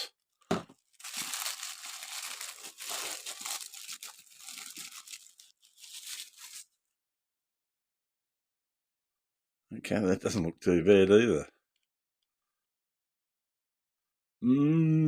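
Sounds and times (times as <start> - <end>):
packaging crinkling: 0.5 - 6.7.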